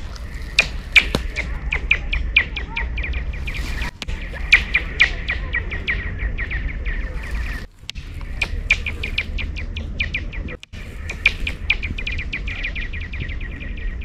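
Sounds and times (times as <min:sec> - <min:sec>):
ice chirping and pinging: 0:00.0 - 0:02.5, 0:07.2 - 0:12.4
low rumble: 0:00.0 - 0:14.0.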